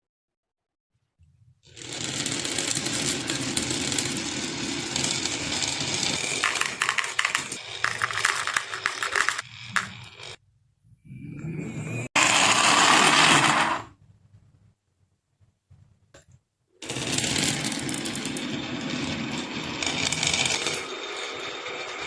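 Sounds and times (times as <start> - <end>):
marbles rolling down wooden track: 1.7 - 10.4, 12.2 - 13.9, 16.8 - 22.0.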